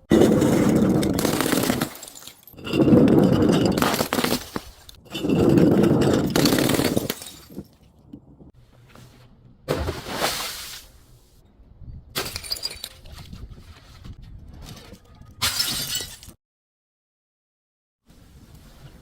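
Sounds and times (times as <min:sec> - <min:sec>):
glass bottles breaking: 0:00.1 - 0:07.8, 0:12.2 - 0:13.1, 0:15.4 - 0:16.4.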